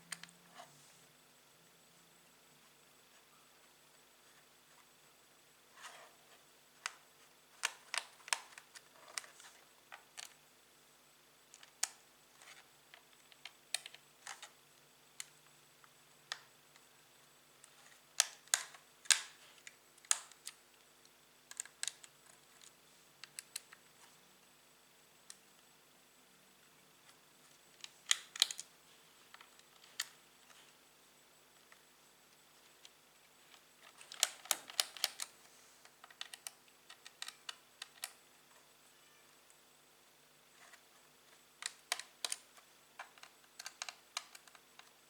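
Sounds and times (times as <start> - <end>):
faint steady hum: 0.0 - 45.0
hands handling plastic parts: 33.5 - 38.2.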